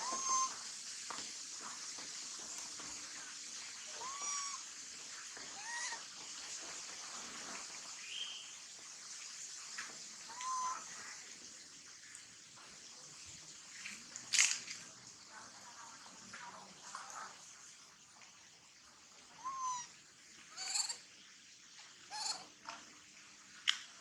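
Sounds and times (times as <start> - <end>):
monkey high-pitched calls: 0.0 - 0.6, 3.9 - 4.7, 5.5 - 6.1, 10.3 - 11.1, 19.4 - 19.9, 20.5 - 21.0, 22.1 - 22.5.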